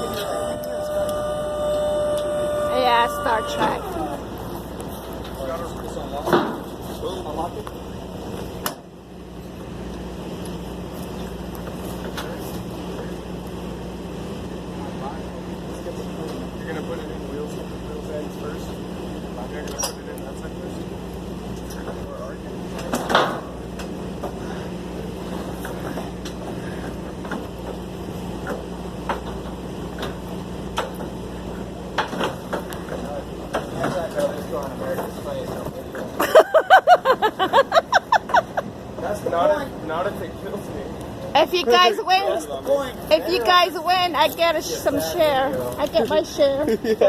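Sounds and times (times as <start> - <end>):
machine humming: 0.0 - 11.8
machinery humming: 0.0 - 47.0.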